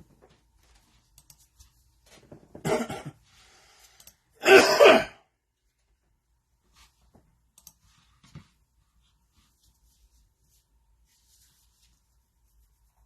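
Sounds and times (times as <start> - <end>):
person coughing: 2.6 - 3.2, 4.4 - 5.3.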